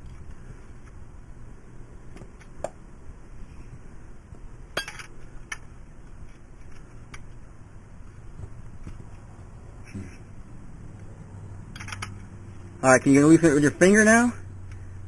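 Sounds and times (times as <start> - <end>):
wrench clinking on metal: 4.8 - 5.6.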